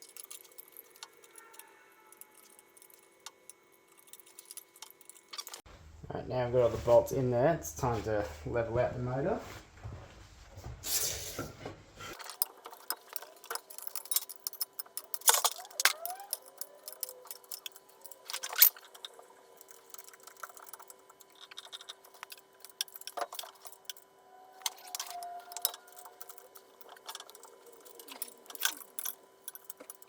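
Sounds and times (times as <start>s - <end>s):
metal spanners clinking: 0.0s - 5.6s, 12.1s - 30.0s
faint steady hum: 0.0s - 30.0s.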